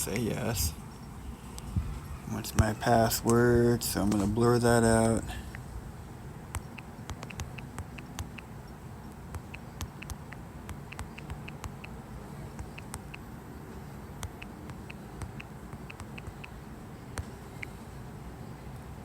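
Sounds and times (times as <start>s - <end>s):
touchscreen keyboard clicks: 6.5s - 8.5s, 9.1s - 13.2s, 14.2s - 17.8s.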